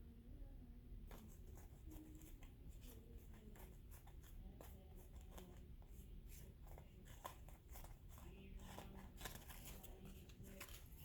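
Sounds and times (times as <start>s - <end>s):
trading cards sliding and ticking: 6.8s - 11.0s.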